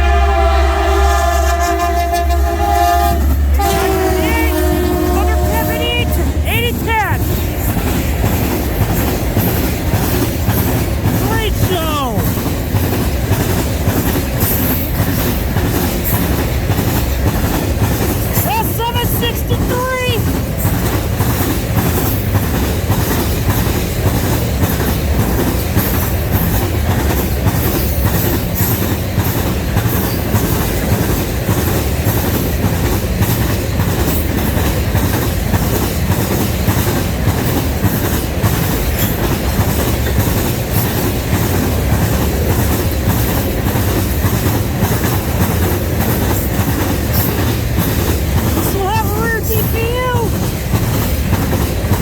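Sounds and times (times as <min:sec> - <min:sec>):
freight train rolling past: 0:00.0 - 0:52.0
wheels clicking over rail joints: 0:12.2 - 0:18.5, 0:20.2 - 0:52.0.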